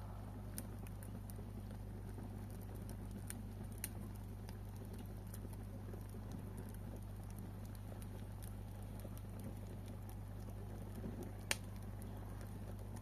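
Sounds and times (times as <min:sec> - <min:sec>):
low rumble of flames: 0:00.0 - 0:13.0
wood fire crackling and popping: 0:00.0 - 0:13.0.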